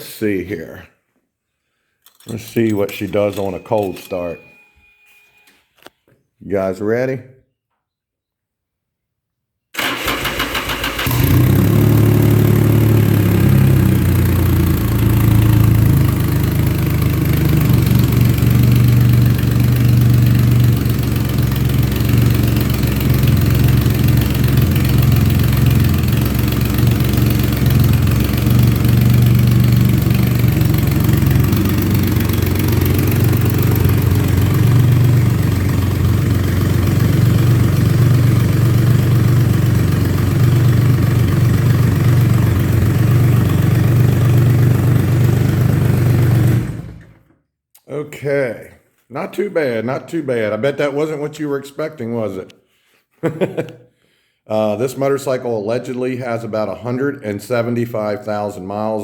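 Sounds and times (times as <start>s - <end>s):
starter motor cranking: 9.8s - 15.8s, 16.4s - 39.2s
motorcycle engine idling: 11.4s - 46.6s.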